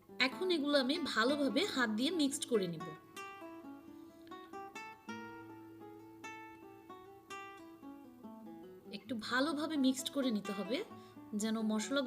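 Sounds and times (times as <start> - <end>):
plucked acoustic guitar: 2.9 - 8.9.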